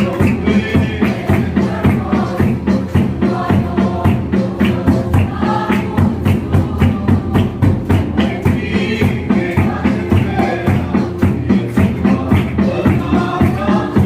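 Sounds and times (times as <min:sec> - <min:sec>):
fast steady drumbeat: 0:00.0 - 0:14.0
group singing a hymn: 0:00.0 - 0:14.0.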